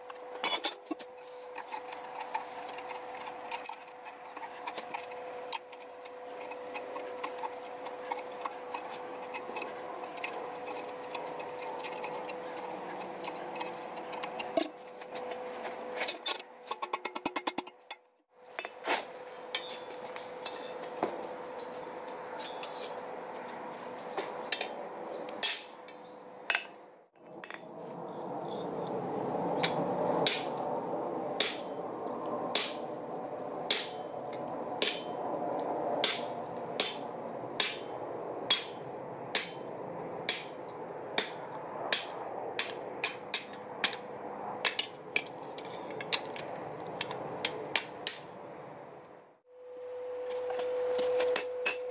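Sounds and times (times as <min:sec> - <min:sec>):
hammer striking steel on anvil: 0:25.4 - 0:26.8, 0:33.7 - 0:34.0, 0:34.8 - 0:35.1, 0:36.0 - 0:37.9, 0:38.5 - 0:39.6, 0:40.3 - 0:40.6, 0:41.2 - 0:44.0.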